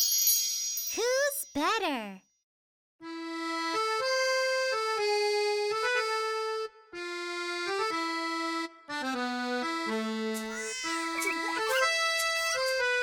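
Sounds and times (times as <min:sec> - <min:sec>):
accordion playing a melody: 0:03.0 - 0:13.0.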